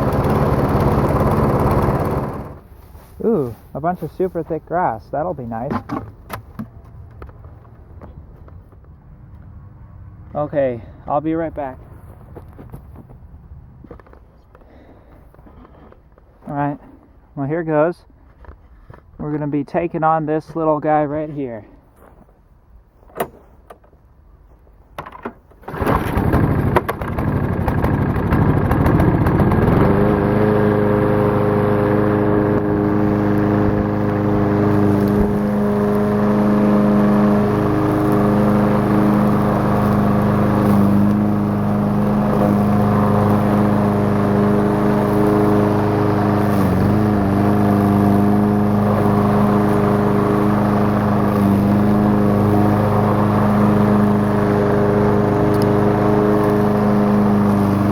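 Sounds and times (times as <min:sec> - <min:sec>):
lawnmower engine running: 0:00.0 - 0:06.6, 0:25.6 - 0:57.9.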